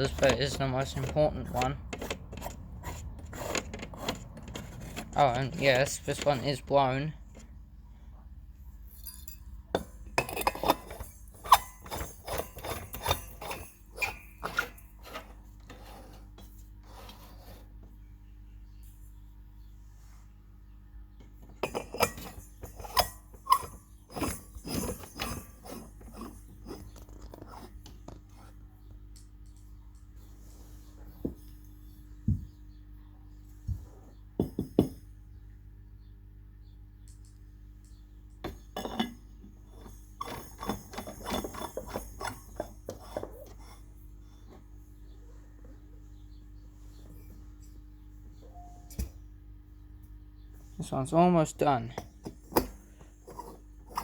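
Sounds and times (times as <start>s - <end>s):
glass clinking against metal: 8.9s - 14.6s, 38.8s - 39.2s
glass bulbs clinking on metal: 8.9s - 14.8s, 21.6s - 26.8s, 38.5s - 43.5s.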